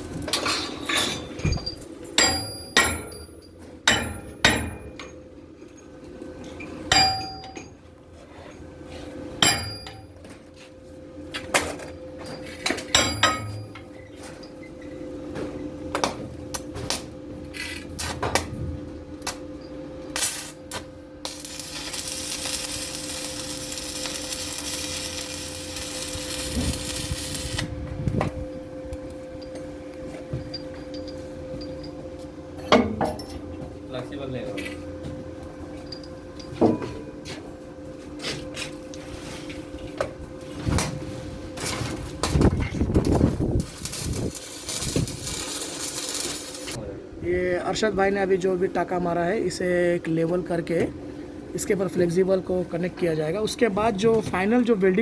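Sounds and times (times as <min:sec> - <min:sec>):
steady hum: 0:00.0 - 0:55.0
hammer striking steel pipe: 0:02.2 - 0:05.2, 0:06.9 - 0:07.7, 0:09.4 - 0:10.0, 0:12.9 - 0:13.8
arc welding sizzle: 0:20.1 - 0:28.4, 0:41.6 - 0:46.8.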